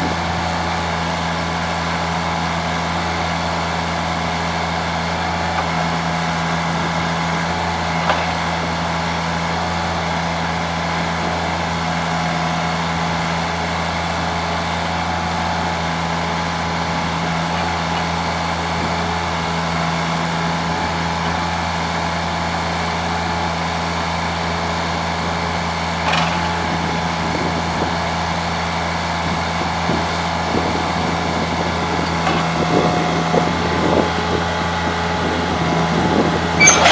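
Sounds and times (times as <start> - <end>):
backhoe engine humming: 0.0 - 36.9.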